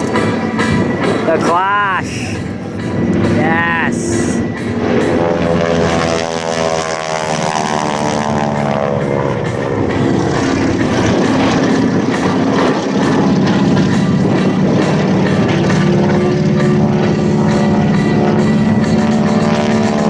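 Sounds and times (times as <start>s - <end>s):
propeller plane flying past: 0.0s - 20.0s.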